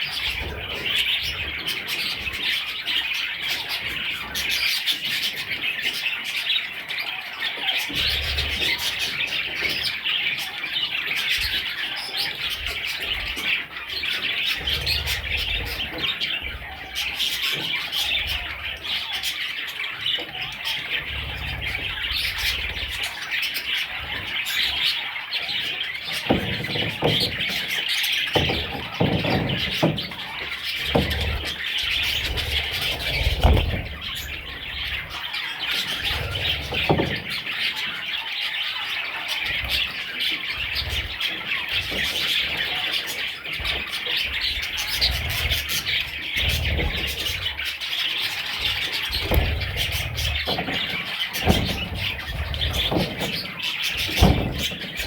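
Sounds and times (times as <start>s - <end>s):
budgerigars chattering and chirping: 0.0s - 55.0s
low thumps and knocks: 26.1s - 37.5s, 48.4s - 55.0s.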